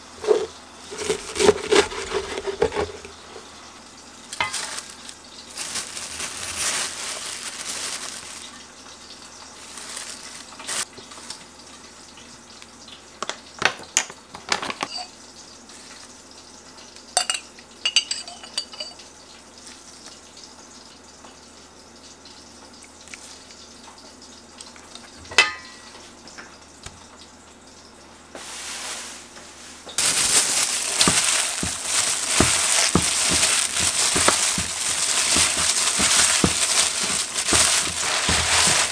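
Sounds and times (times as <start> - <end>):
utensils and dishes clinking: 4.3 - 8.5, 14.4 - 15.2, 17.1 - 19.1, 25.2 - 26.0, 30.0 - 38.9
loud dense crackle: 30.0 - 38.9.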